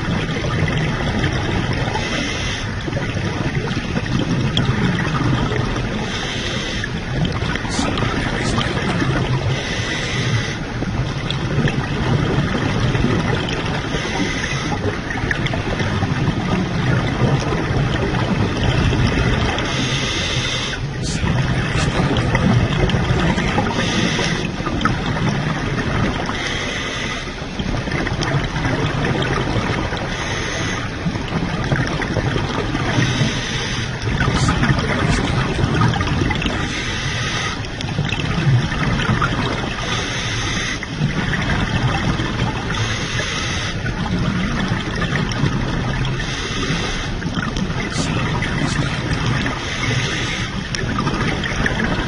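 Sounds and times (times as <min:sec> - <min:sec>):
bubbles: 0:00.0 - 0:52.0
low rumble of water: 0:00.0 - 0:52.0
diver breathing through regulator: 0:01.8 - 0:02.8, 0:06.0 - 0:07.0, 0:07.7 - 0:10.7, 0:13.8 - 0:14.9, 0:19.4 - 0:22.4, 0:23.4 - 0:24.6, 0:26.3 - 0:27.5, 0:30.0 - 0:31.0, 0:32.9 - 0:35.3, 0:36.6 - 0:37.8, 0:39.8 - 0:41.0, 0:42.7 - 0:43.8, 0:46.2 - 0:47.2, 0:47.9 - 0:50.8.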